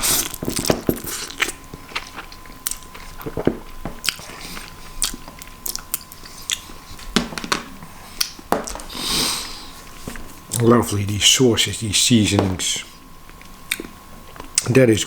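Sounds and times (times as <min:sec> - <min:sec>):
person chewing noodles: 0:00.0 - 0:07.1, 0:13.3 - 0:14.7.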